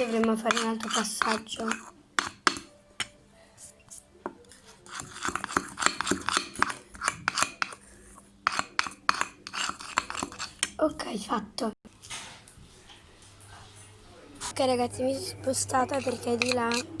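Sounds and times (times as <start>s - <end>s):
spoon clinking and scraping: 0.0s - 3.2s, 3.8s - 10.8s, 15.5s - 17.0s
teaspoon stirring slime in a bowl: 0.0s - 11.2s, 14.4s - 17.0s.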